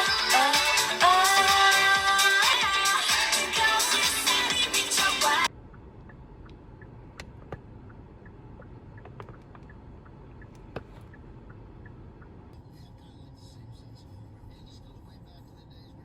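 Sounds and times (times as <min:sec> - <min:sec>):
low rumble and hiss: 0:05.4 - 0:16.0.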